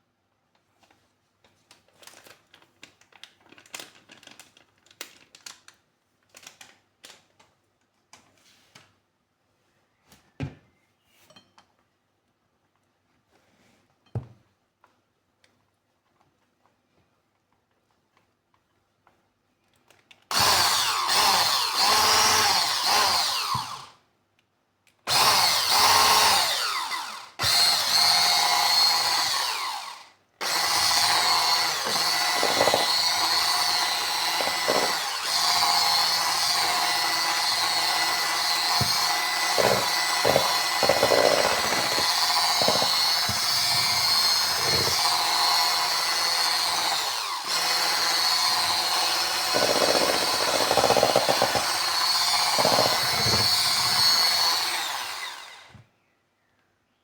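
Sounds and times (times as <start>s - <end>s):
kitchen appliance motor whining: 20.3s - 23.9s, 25.1s - 55.8s.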